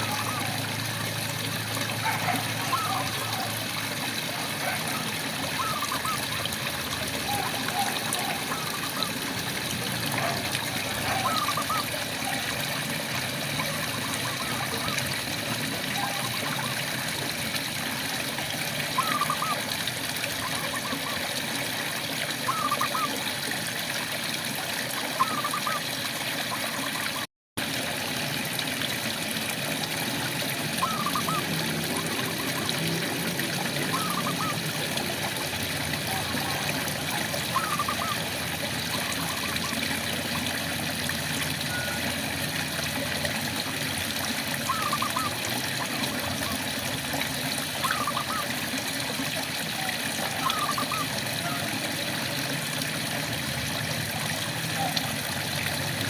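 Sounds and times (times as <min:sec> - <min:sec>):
frog chirping: 0:37.5 - 0:38.2.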